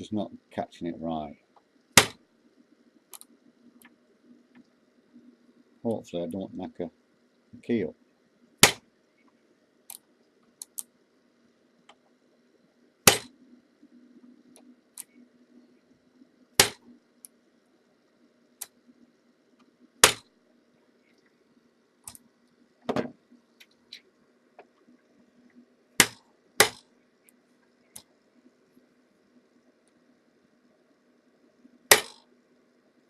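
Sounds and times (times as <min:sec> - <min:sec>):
sharp metallic knocks: 0:31.9 - 0:32.2.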